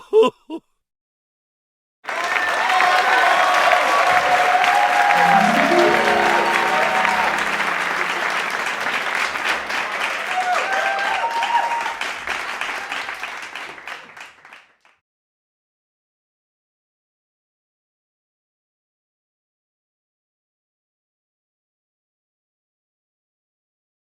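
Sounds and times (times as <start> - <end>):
crowd applauding and cheering: 2.1 - 14.5.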